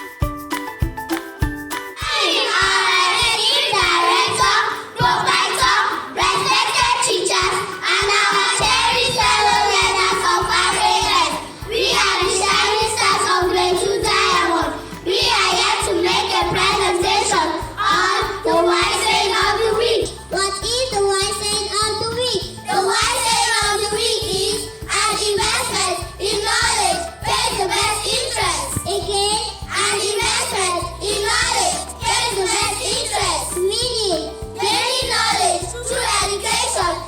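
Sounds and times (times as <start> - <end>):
music backing track: 0.0 - 37.0
child singing: 2.0 - 37.0
steady bass line: 8.6 - 37.0.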